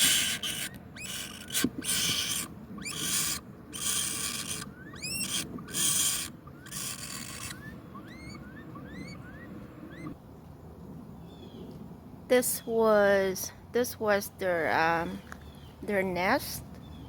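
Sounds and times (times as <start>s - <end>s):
high rising chirps: 0.0s - 10.2s
nestlings hissing begging rasps: 0.0s - 10.2s.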